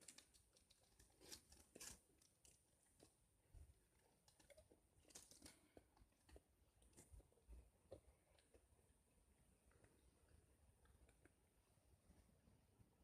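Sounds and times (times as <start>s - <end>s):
crunching and chewing biscuits: 0.0s - 9.0s.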